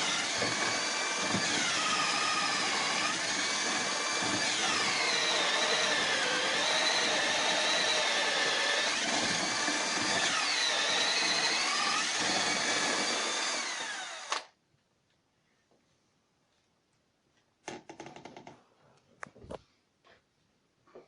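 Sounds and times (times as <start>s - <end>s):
power drill boring into floor: 0.0s - 14.5s.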